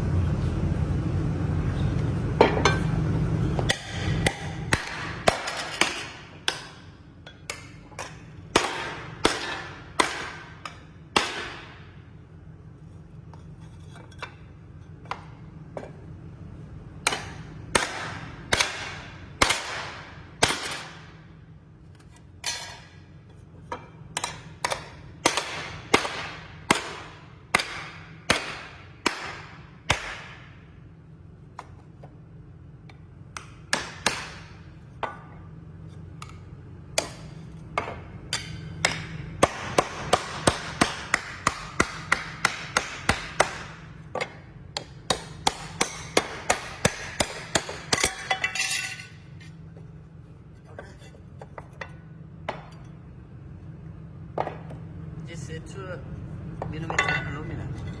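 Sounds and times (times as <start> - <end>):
hammer striking aluminum plate: 3.6 - 11.8, 17.0 - 21.2, 23.7 - 30.6, 33.4 - 35.2, 37.0 - 49.0.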